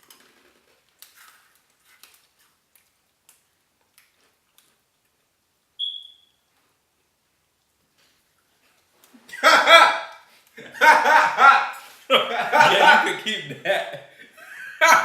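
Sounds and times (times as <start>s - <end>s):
chewing crispy snack: 0.0s - 5.2s.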